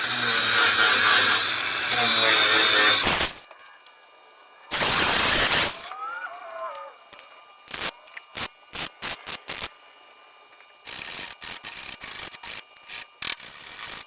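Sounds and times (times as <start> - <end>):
abrasive strokes on sheet metal: 4.7 - 5.9.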